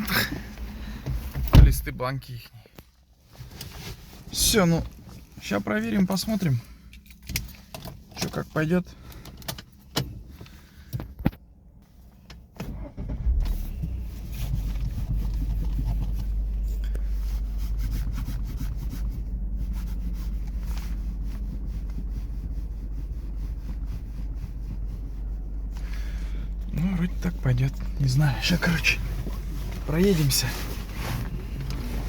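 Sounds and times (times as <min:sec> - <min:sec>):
car engine starting and idling: 0:00.0 - 0:02.4, 0:04.0 - 0:32.0.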